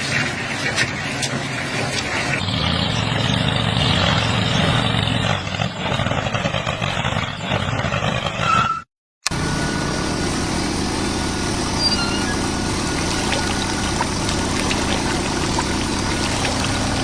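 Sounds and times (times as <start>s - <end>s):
motor running: 9.3s - 17.0s.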